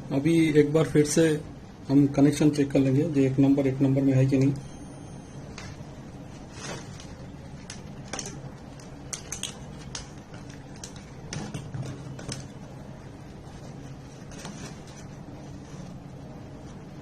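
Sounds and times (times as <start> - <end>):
steady low hum: 0.0 - 17.0
small parts clicking and tapping: 7.6 - 12.5.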